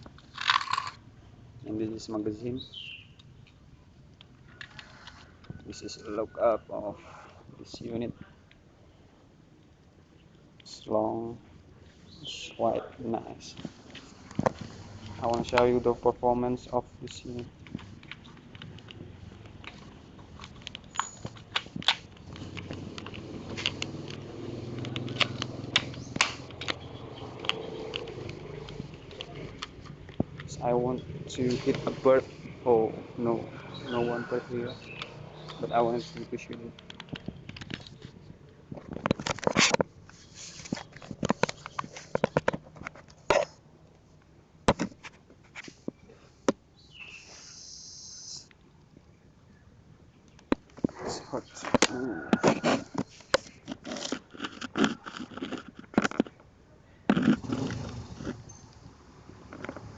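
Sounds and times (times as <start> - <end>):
clattering handling noises: 0.0 - 1.0, 13.4 - 16.0, 33.7 - 43.6, 50.4 - 56.5, 59.2 - 59.9.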